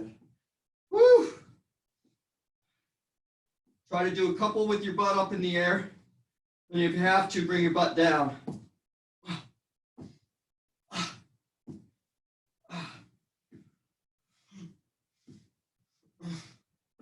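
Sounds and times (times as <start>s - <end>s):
person breathing heavily: 12.7s - 13.1s.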